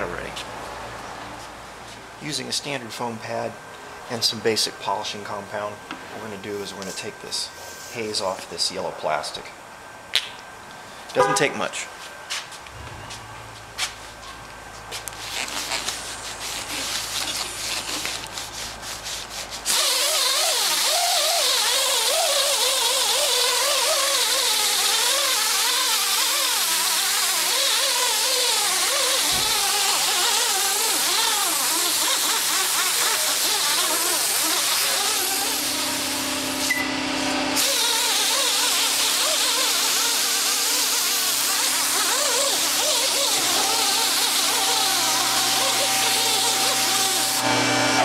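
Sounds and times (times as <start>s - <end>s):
polishing pad rubbing plastic: 14.9s - 35.9s, 37.6s - 47.4s.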